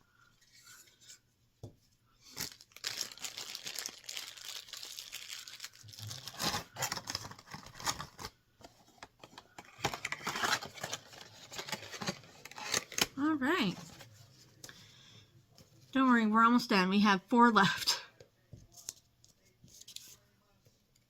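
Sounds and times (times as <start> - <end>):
packaging crinkling and tearing: 2.2 - 8.4, 9.6 - 13.1.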